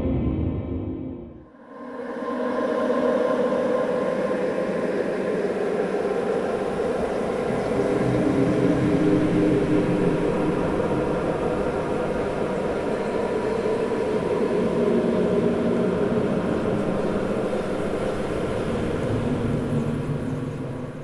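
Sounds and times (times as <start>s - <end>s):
machine-like drone: 0.0s - 1.5s.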